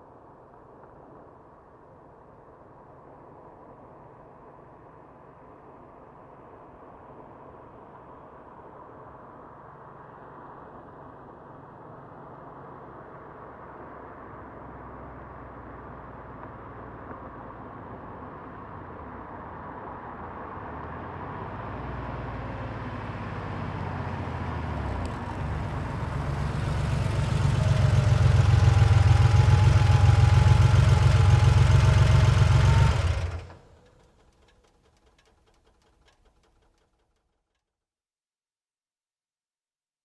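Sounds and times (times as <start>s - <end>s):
car engine idling: 23.0s - 37.0s.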